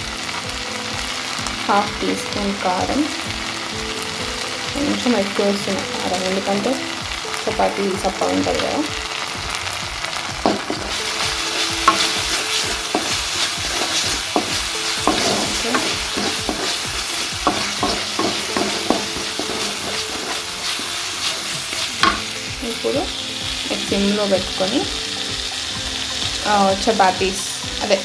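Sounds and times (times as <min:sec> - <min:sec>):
masala sizzling in a pan: 0:00.0 - 0:28.0
spatula scraping a pan: 0:10.5 - 0:22.4.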